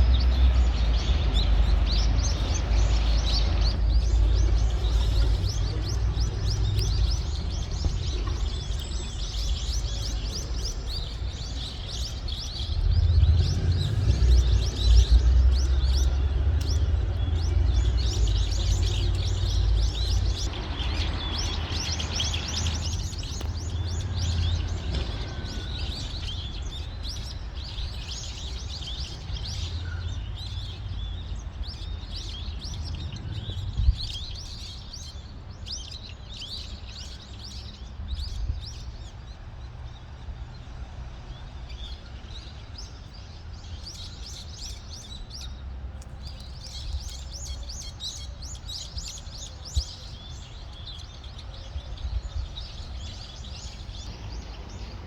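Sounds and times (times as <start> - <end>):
low rumble: 0.0 - 27.4
small birds chirping: 0.0 - 55.0.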